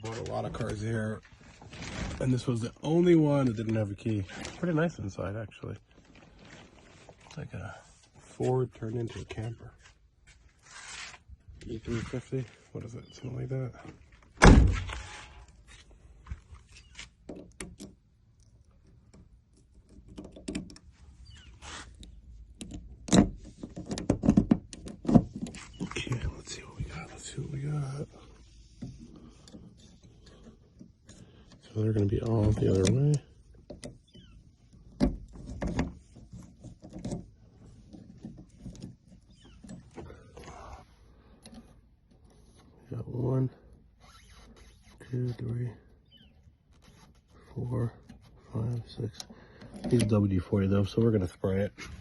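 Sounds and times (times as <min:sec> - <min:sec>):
handling clicks and rustling: 0:00.0 - 0:10.6, 0:11.5 - 0:42.9, 0:46.6 - 0:52.0
short rustle: 0:05.9 - 0:12.8
loud thump: 0:14.4 - 0:15.0.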